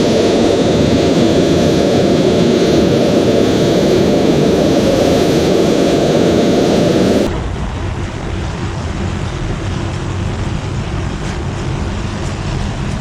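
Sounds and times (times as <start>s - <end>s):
industrial machinery rumbling hiss: 0.0s - 13.0s.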